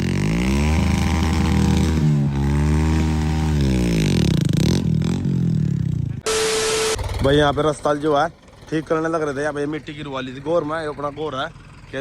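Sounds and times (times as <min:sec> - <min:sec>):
tractor diesel engine revving: 0:00.0 - 0:12.0.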